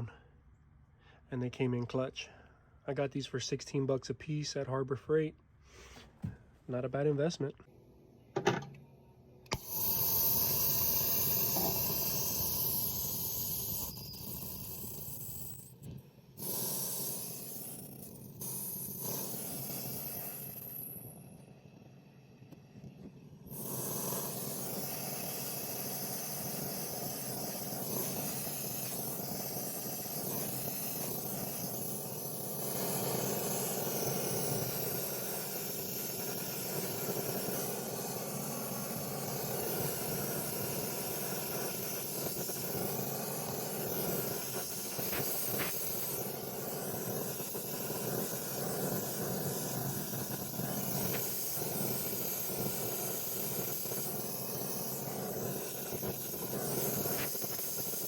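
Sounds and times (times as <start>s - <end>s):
hiss of rushing gas: 9.5s - 15.2s, 16.3s - 20.9s, 23.5s - 58.0s.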